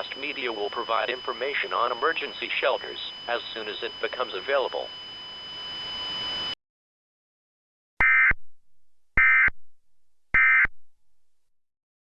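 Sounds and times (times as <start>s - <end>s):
buzzy data bursts: 0.0s - 4.9s
radio hiss: 0.0s - 4.9s.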